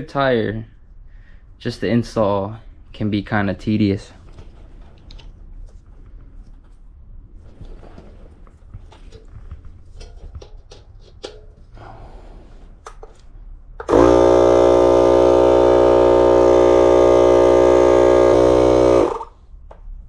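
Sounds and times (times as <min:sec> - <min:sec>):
tire inflator motor running: 0:13.8 - 0:19.4.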